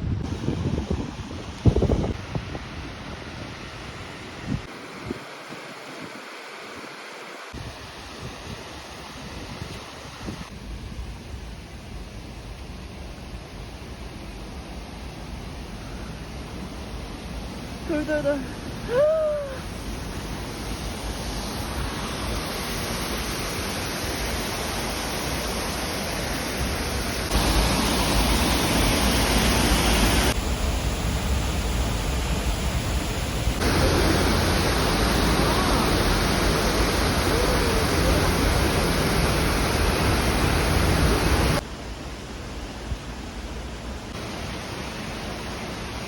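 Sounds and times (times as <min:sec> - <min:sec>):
waterfall rushing: 0:16.4 - 0:30.5, 0:33.5 - 0:41.6, 0:44.2 - 0:46.0.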